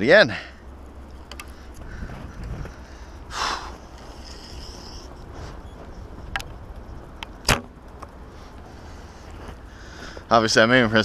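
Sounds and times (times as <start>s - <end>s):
wind rumble on microphone: 1.7s - 3.1s.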